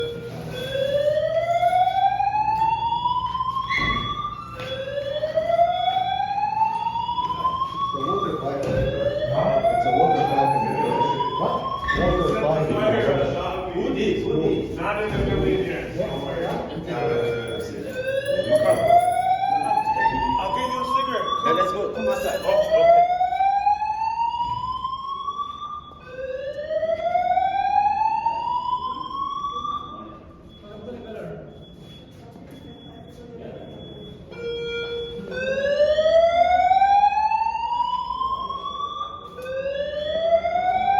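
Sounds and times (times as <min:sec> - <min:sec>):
fire alarm whoop: 0:00.0 - 0:13.1, 0:16.0 - 0:30.3, 0:34.3 - 0:40.9
high pulsed beeping: 0:07.8 - 0:23.5.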